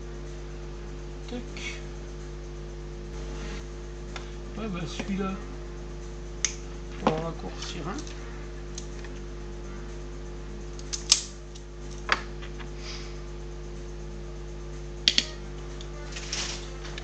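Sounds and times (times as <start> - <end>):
steady low hum: 0.0 - 17.0
wire cutter snipping wire: 15.1 - 15.4.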